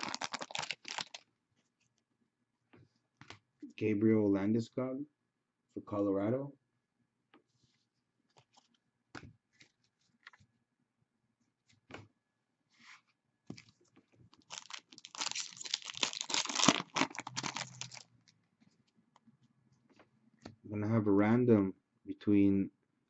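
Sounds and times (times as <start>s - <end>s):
foil wrapper crinkling and tearing: 0.0s - 1.2s, 14.4s - 18.1s.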